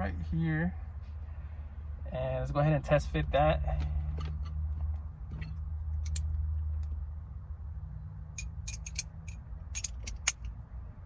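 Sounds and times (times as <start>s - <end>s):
metal socket clinking on bolt: 6.0s - 6.3s, 8.4s - 10.5s.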